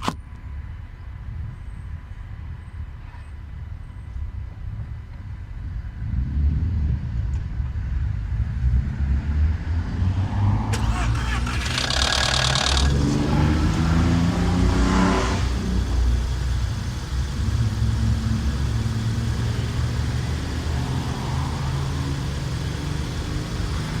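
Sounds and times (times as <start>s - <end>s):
car engine running with knock: 10.5s - 24.0s.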